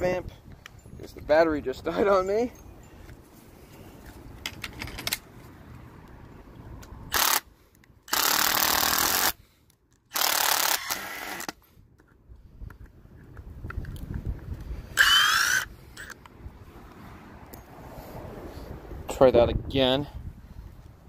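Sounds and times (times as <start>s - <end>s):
impact driver driving screw: 7.1s - 7.4s, 8.1s - 9.4s, 10.1s - 11.6s, 15.0s - 16.2s.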